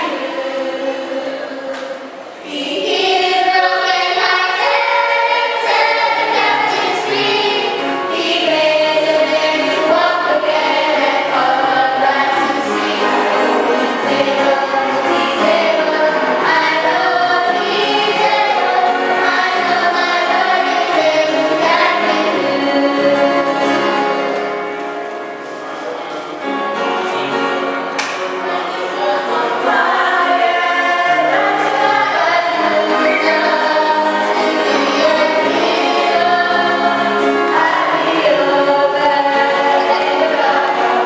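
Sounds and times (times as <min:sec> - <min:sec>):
choir singing: 0:00.0 - 0:24.8, 0:28.3 - 0:41.0.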